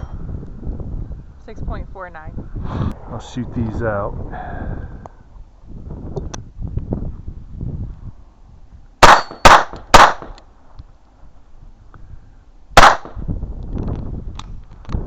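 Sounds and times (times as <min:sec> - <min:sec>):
rifle gunshots: 0:09.0 - 0:10.3, 0:12.8 - 0:13.2.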